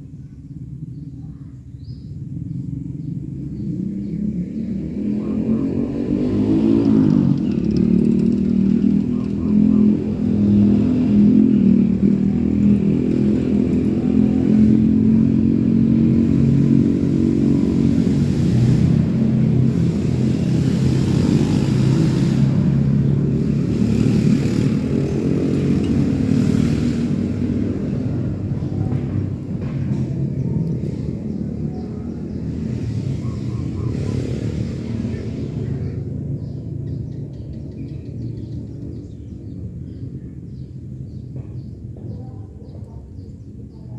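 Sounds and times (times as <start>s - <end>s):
engine running close by: 0.0s - 43.9s.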